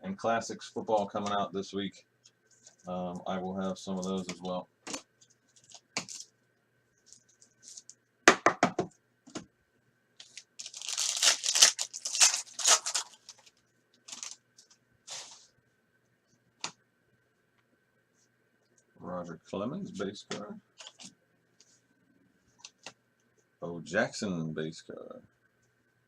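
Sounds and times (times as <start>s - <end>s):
wrapper and cards rustling: 4.0s - 6.3s, 7.0s - 7.9s, 10.2s - 15.5s, 20.8s - 21.1s
wrapper ripping: 10.2s - 14.4s.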